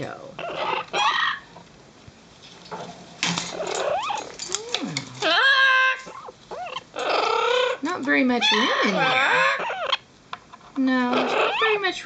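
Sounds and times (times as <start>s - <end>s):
parrots squawking and calling: 0.1s - 1.6s, 3.2s - 10.1s, 10.9s - 12.0s.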